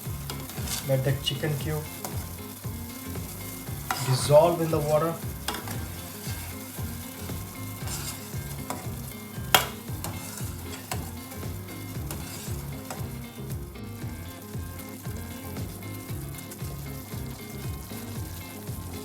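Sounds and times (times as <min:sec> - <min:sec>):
stock simmering and bubbling: 0:00.0 - 0:19.0.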